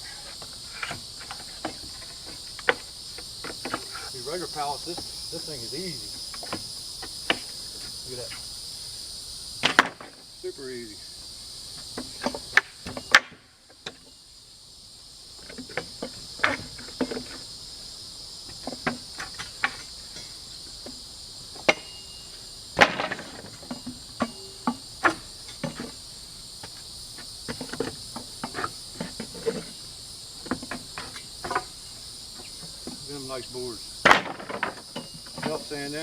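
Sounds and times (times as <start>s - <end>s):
crickets and insects chirping: 0.0s - 36.0s
pallet boards cracking: 9.6s - 10.2s, 22.8s - 23.8s, 34.0s - 35.6s.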